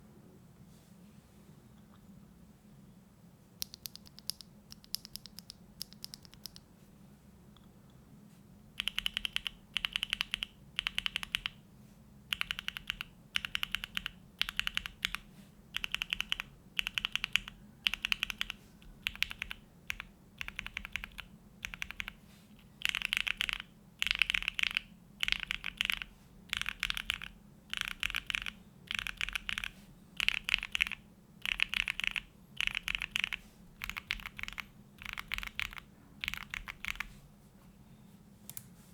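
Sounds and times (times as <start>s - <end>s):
mechanical keyboard typing: 3.6s - 6.6s, 8.8s - 11.6s, 12.3s - 37.1s.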